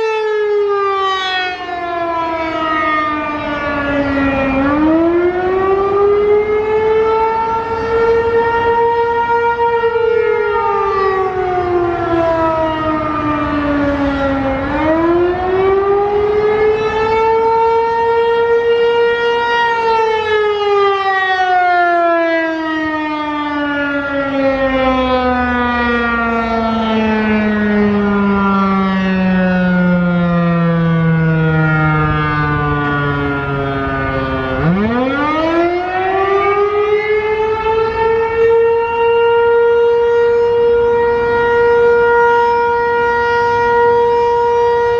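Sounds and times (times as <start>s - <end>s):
warning siren wailing: 0.0s - 44.9s.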